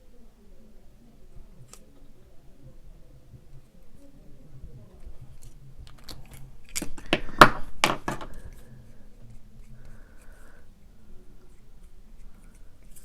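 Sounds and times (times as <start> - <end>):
plastic parts clicking and knocking: 5.4 - 8.6
faint scratching: 8.3 - 13.0.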